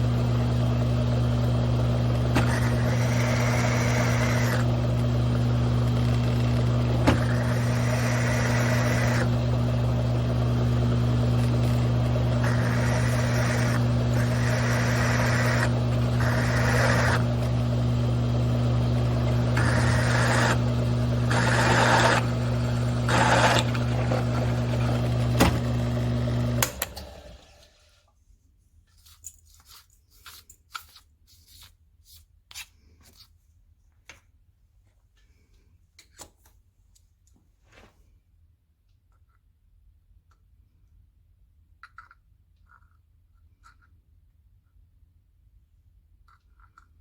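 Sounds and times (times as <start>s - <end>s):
mill-drill motor hum: 0.0s - 27.8s
drill bit cutting metal: 1.4s - 26.9s.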